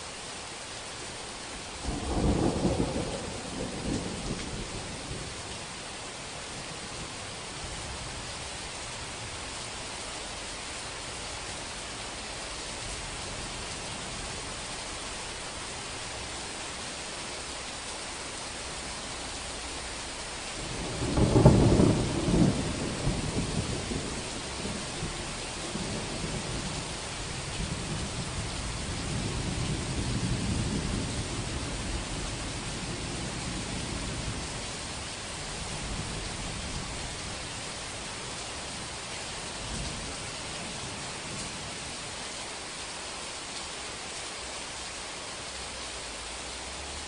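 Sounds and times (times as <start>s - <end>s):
heavy rain: 0.0s - 47.0s
thunder clap and rumbling: 1.8s - 5.3s, 20.6s - 34.5s.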